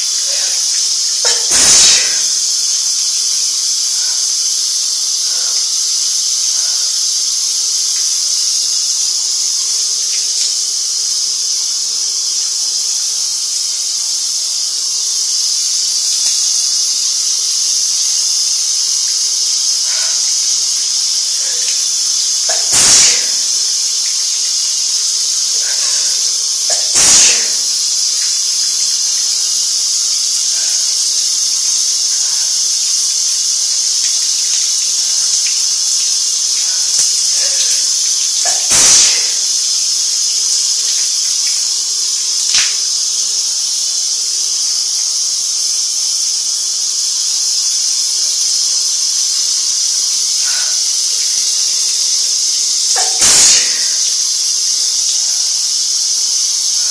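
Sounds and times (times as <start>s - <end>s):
loud sharp sneezes: 0.0s - 2.5s, 19.8s - 20.5s, 21.2s - 23.9s, 25.5s - 28.0s, 37.0s - 39.6s, 53.0s - 54.2s
shower spray running: 0.0s - 56.9s.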